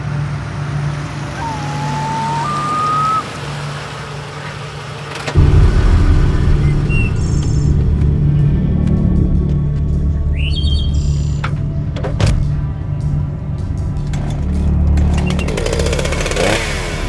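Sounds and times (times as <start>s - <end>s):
chainsaw engine revving: 14.4s - 17.0s.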